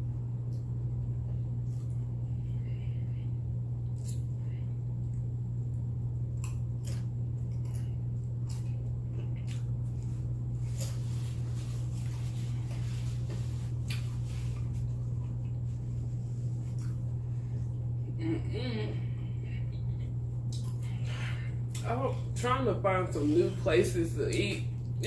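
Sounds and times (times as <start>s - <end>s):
steady low hum: 0.0s - 25.0s
chewing nachos: 3.7s - 18.0s, 19.6s - 21.9s.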